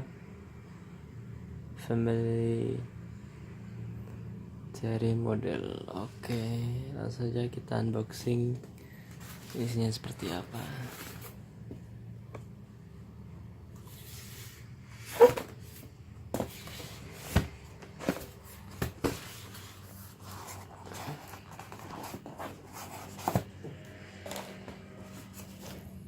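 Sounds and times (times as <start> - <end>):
packaging rustling: 9.1 - 11.4, 16.4 - 23.6.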